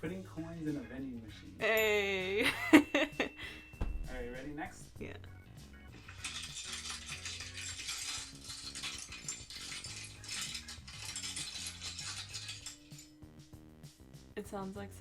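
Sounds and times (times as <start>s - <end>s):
keys jingling: 6.0s - 13.2s.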